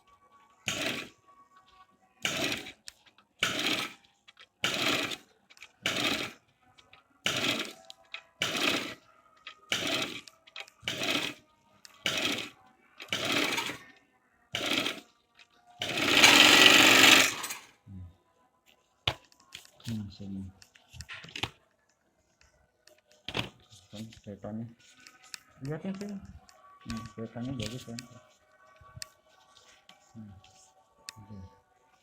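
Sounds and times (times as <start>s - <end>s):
overlock sewing machine running: 0.7s - 1.1s, 2.2s - 2.8s, 3.4s - 4.0s, 4.6s - 5.2s, 5.8s - 6.4s, 7.3s - 7.8s, 8.4s - 9.0s, 9.7s - 11.4s, 12.0s - 13.8s, 14.6s - 15.0s, 15.8s - 17.6s.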